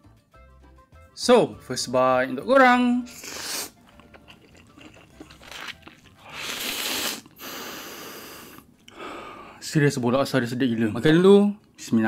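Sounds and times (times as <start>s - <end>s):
person chewing noodles: 3.1s - 8.9s.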